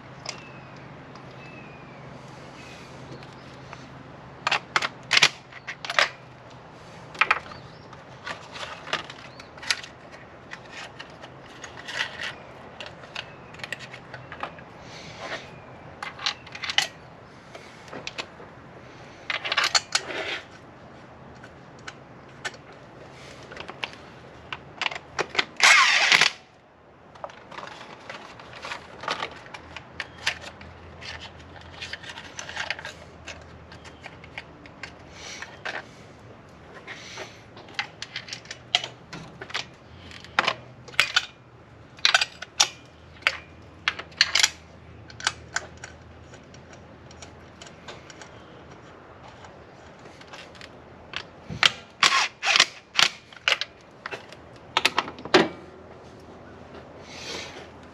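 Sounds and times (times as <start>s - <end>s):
metal clicks of hand tools: 36.9s - 41.4s, 42.0s - 55.6s.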